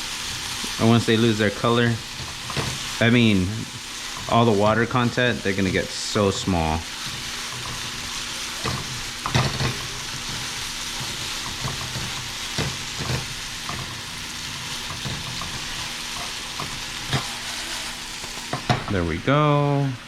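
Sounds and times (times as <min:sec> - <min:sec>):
steak and onions sizzling in pan: 0:00.0 - 0:20.0
utensil knocking against pan: 0:11.0 - 0:14.0.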